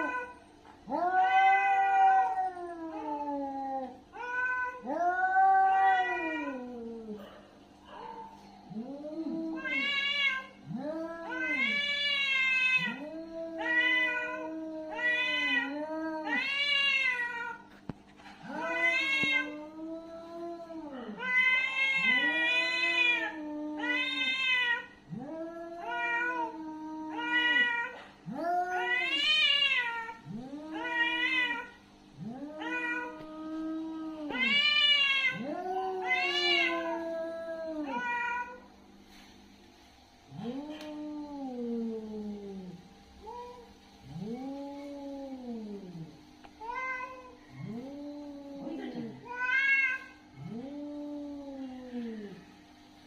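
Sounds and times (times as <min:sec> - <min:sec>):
angry cat yowling: 0:00.0 - 0:07.3, 0:08.0 - 0:17.6, 0:18.4 - 0:38.6
faint low hum: 0:00.0 - 0:53.0.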